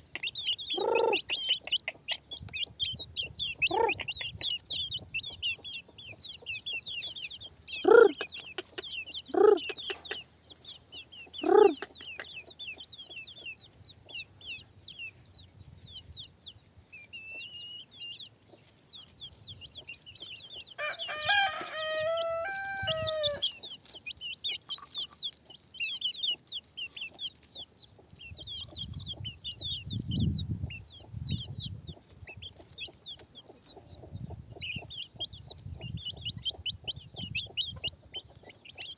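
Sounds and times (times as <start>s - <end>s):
chickens clucking: 0.0s - 38.9s
high bird chirping: 0.0s - 38.9s
rooster crowing: 20.8s - 23.5s.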